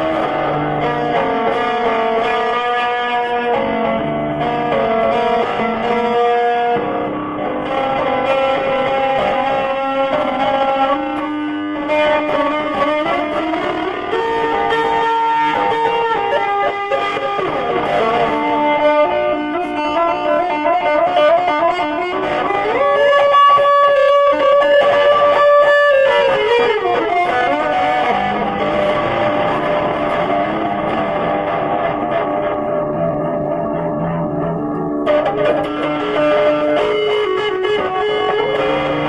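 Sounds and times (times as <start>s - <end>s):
distorted electric guitar melody: 0.0s - 39.0s.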